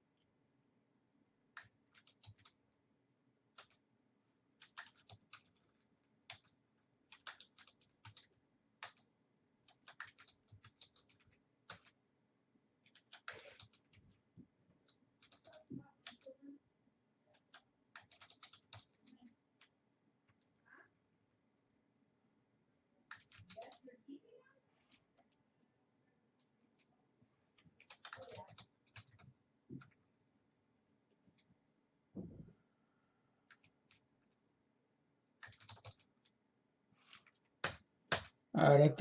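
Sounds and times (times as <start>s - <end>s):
keyboard typing: 1.5s - 2.6s, 3.5s - 3.8s, 4.6s - 12.0s, 12.8s - 14.2s, 14.8s - 16.4s, 17.3s - 20.5s, 23.1s - 23.8s, 27.6s - 30.0s, 33.4s - 34.4s, 35.4s - 36.4s, 37.1s - 38.4s.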